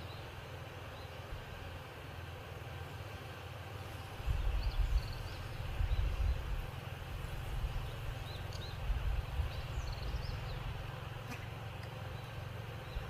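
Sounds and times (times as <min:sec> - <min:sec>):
small birds chirping: 0:00.0 - 0:01.8, 0:03.7 - 0:13.0
wind rumble on microphone: 0:04.2 - 0:06.7, 0:07.3 - 0:10.8.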